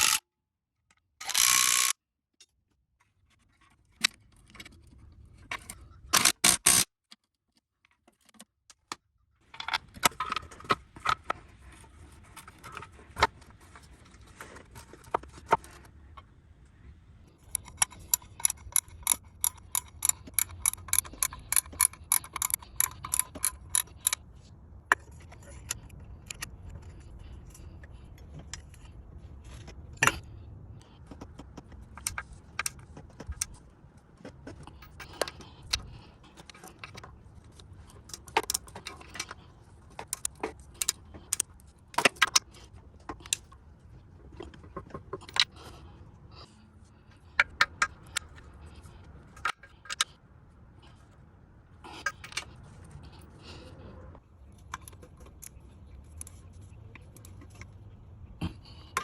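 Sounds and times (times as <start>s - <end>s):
metal tools and bolts clinking: 17.4s - 24.2s.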